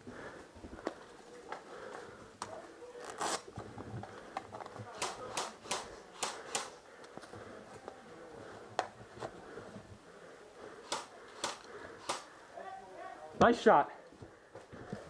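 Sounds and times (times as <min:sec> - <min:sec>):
faint voices: 0:00.0 - 0:15.0
airsoft gun shots: 0:10.9 - 0:12.3.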